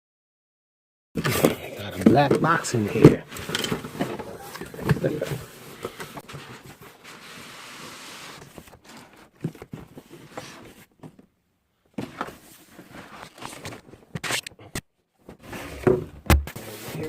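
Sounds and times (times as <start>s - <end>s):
cardboard packaging rustling: 1.2s - 10.9s, 12.0s - 14.5s.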